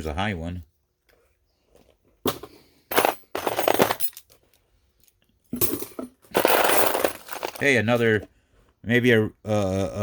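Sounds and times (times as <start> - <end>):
metal pieces clinking and rattling: 2.9 - 7.8.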